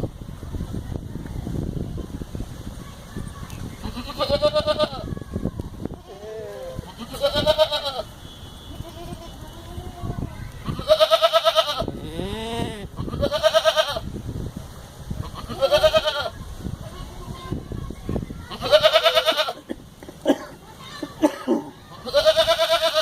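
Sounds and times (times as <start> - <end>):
goats bleating: 3.8 - 5.1, 6.0 - 8.1, 8.7 - 14.0, 15.2 - 17.4, 18.5 - 19.7, 21.9 - 23.0.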